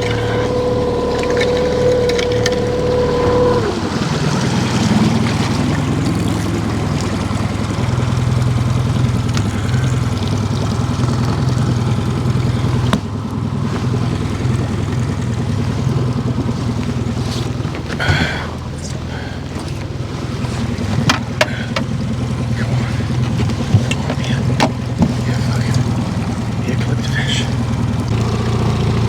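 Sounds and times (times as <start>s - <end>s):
boat motor: 0.0s - 29.0s.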